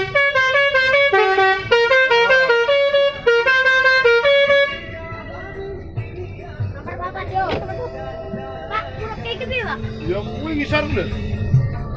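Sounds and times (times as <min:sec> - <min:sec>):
multi-tone bus horn melody: 0:00.0 - 0:05.6.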